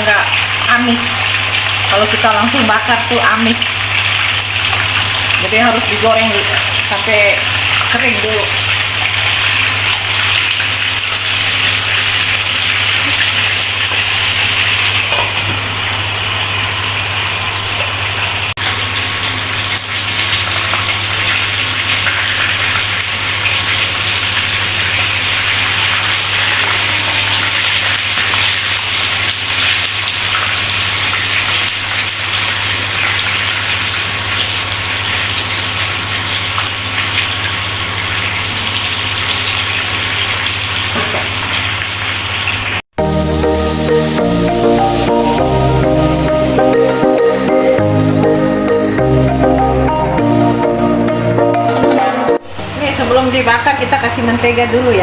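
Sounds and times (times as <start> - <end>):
fish sizzling in hot oil: 0.0 - 42.9.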